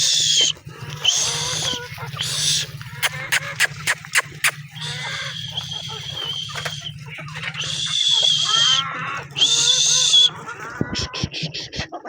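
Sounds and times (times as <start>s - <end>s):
chickens clucking: 0.0s - 12.0s
chickens squealing: 0.0s - 12.0s.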